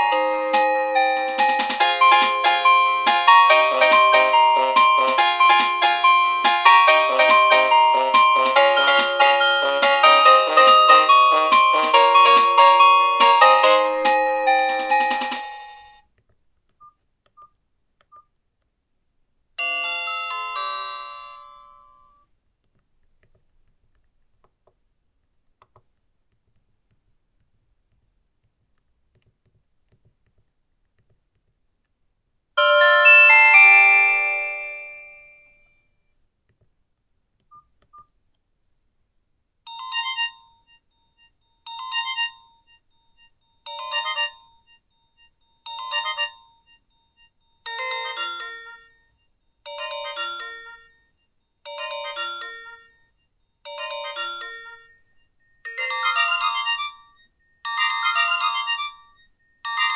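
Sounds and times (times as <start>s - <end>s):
melodic phone ringtone: 0.0s - 16.0s, 19.6s - 22.2s, 32.6s - 35.6s, 39.7s - 59.9s
phone ringing chord: 43.7s - 44.5s, 45.7s - 46.6s.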